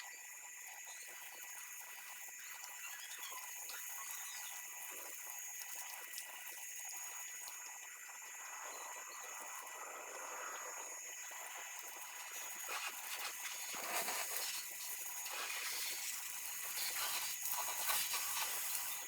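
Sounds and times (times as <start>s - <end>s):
hose water spraying: 11.2s - 19.0s.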